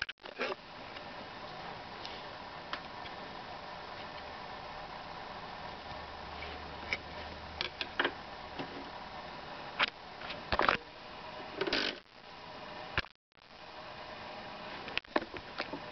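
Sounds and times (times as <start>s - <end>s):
phonograph record surface hiss: 0.0s - 15.9s
record clicks and pops: 9.8s - 10.8s, 13.0s - 13.5s, 14.9s - 15.9s.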